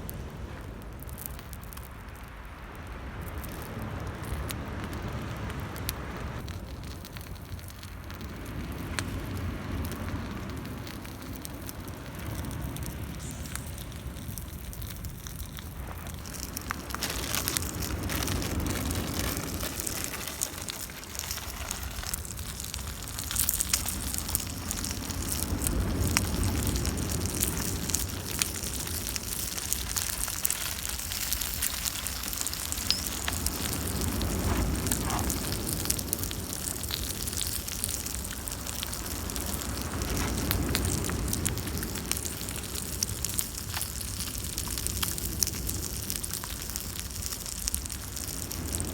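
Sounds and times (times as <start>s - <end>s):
campfire crackling and popping: 0.0s - 48.9s
low rumble: 2.5s - 43.0s.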